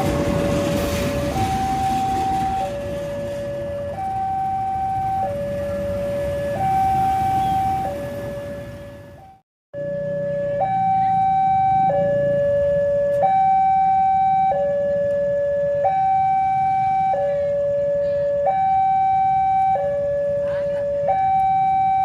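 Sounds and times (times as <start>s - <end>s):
two-tone electronic warning alarm: 0.0s - 22.0s.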